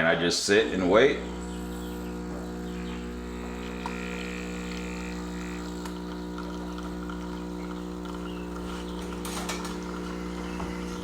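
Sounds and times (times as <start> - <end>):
espresso machine pump humming: 0.0 - 11.0.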